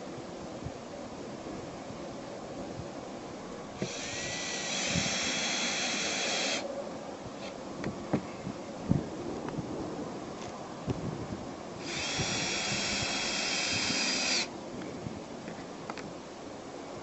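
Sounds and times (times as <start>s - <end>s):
power drill whining: 3.8s - 6.6s, 11.8s - 14.5s.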